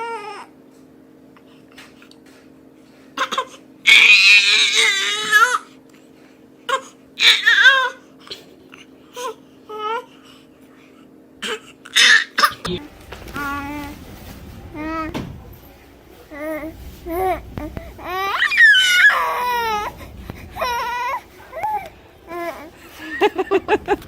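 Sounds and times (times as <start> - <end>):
baby crying: 3.2 - 5.7, 6.7 - 8.0, 16.4 - 23.9.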